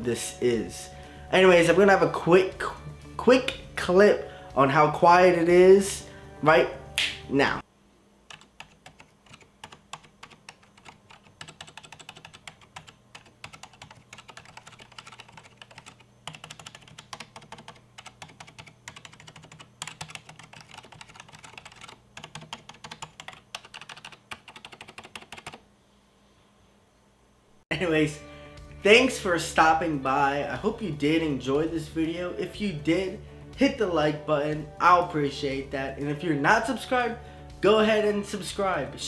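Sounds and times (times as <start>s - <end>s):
fast typing on keyboard: 8.3s - 25.6s.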